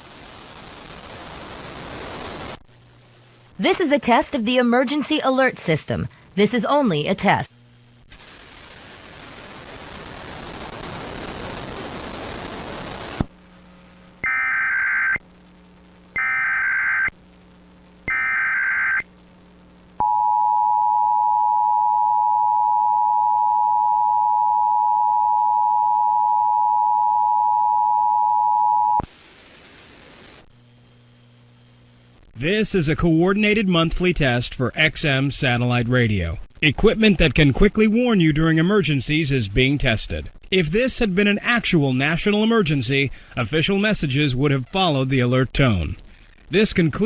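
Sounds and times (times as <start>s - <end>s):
hiss of noise: 8.1s - 13.4s
data bursts: 18.1s - 19.0s.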